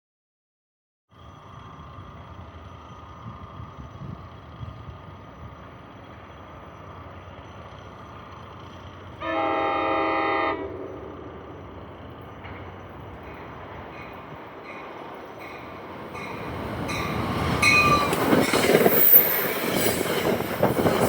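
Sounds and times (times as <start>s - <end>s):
train rumbling: 1.1s - 21.0s
train horn chord: 9.2s - 11.2s.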